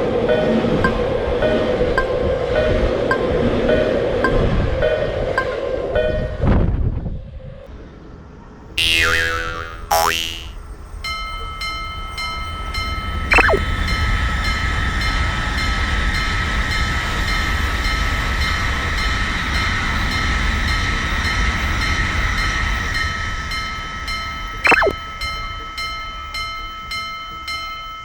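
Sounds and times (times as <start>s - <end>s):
falling whistle-like tone: 13.3s - 13.6s.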